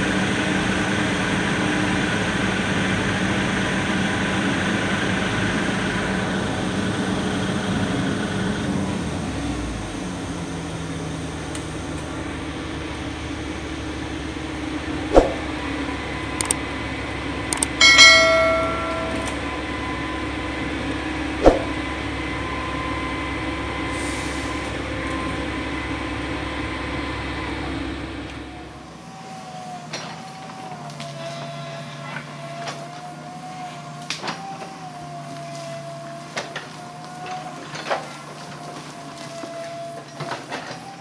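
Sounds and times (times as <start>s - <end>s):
diesel engine running: 0.0s - 41.0s
scattered clicks: 16.4s - 16.6s, 17.5s - 17.8s
wavering whine: 17.6s - 23.3s
metal clank: 17.8s - 19.4s.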